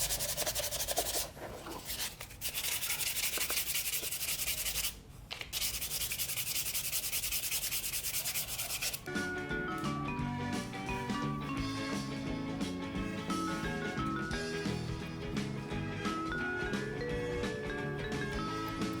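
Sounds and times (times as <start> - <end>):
music: 9.0 - 19.0.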